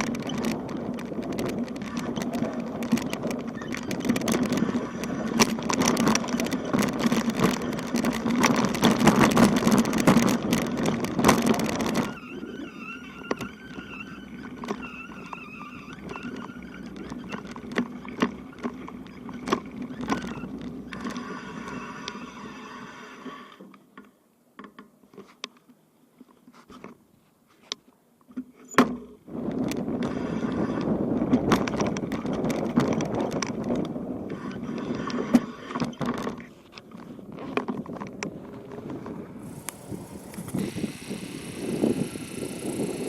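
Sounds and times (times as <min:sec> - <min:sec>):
bicycle rattles and knocks: 0:00.0 - 0:21.3, 0:28.3 - 0:43.0
bicycle tyre rumble: 0:29.3 - 0:43.0
scattered clicks: 0:39.4 - 0:43.0.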